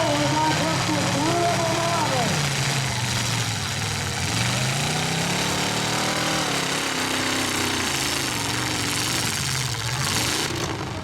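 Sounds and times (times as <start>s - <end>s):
truck engines running hard: 0.0s - 11.0s.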